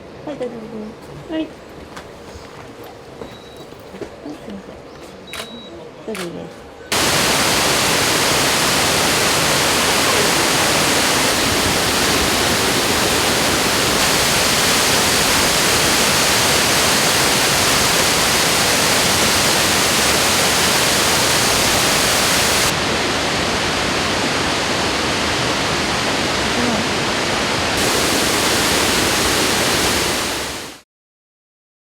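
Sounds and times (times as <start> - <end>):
waterfall rushing: 6.9 - 30.8.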